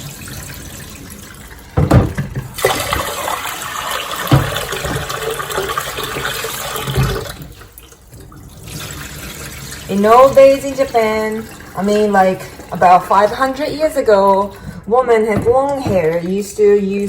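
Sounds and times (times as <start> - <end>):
water pouring into sink: 0.0 - 17.0
container knocks: 1.8 - 2.5, 4.3 - 5.2.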